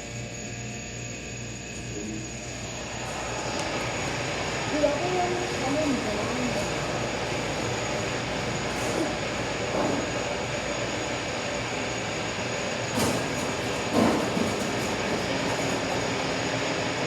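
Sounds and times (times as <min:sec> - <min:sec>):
elevator machinery drone: 0:00.0 - 0:17.0
short clunks: 0:12.9 - 0:16.3.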